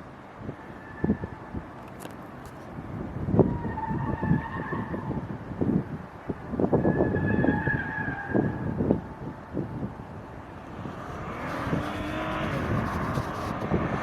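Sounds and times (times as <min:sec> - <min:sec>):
wind buffeting microphone: 0:00.0 - 0:14.0
car tyres squealing: 0:00.6 - 0:01.4, 0:03.4 - 0:05.3, 0:06.6 - 0:09.0, 0:10.5 - 0:14.0.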